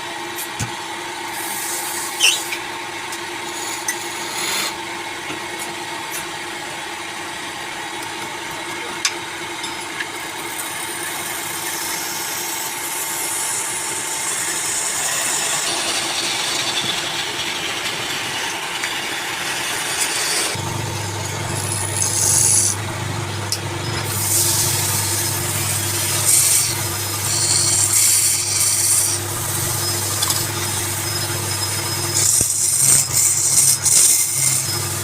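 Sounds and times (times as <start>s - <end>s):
tool scraping spinning wood: 9.5s - 35.0s
wood lathe motor hum: 10.1s - 35.0s.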